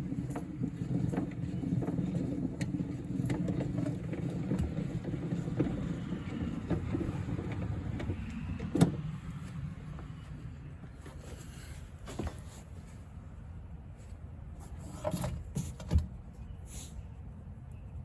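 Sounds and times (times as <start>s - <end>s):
mechanism clicks and scrapes: 14.6s - 15.9s.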